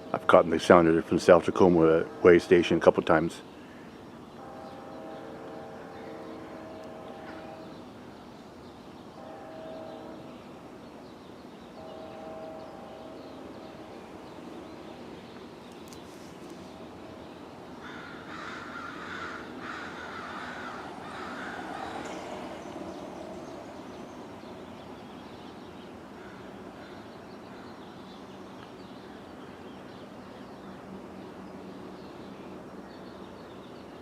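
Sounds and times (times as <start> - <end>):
outdoor background hum: 0.0 - 34.0
crow cawing: 17.8 - 22.4, 26.1 - 27.0.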